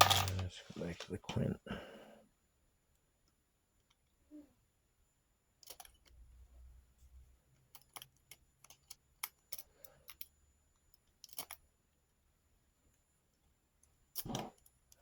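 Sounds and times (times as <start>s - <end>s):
lock pick clicking in lock: 5.6s - 6.1s, 7.7s - 10.3s, 10.9s - 11.6s.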